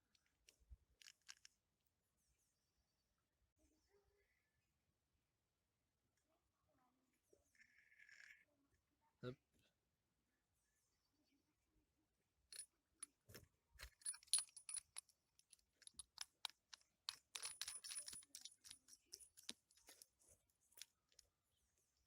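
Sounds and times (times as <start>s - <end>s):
small metal parts clinking: 1.0s - 1.5s, 12.5s - 21.3s.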